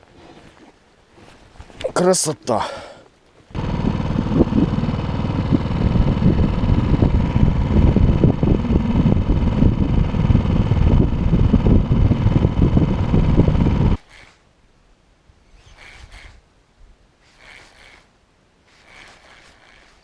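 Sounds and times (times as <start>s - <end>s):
outboard motor running: 3.5s - 14.0s.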